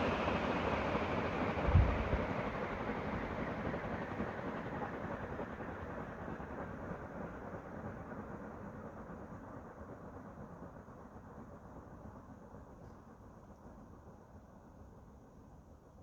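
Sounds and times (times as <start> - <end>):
ceiling fan air rush: 0.0 - 7.0.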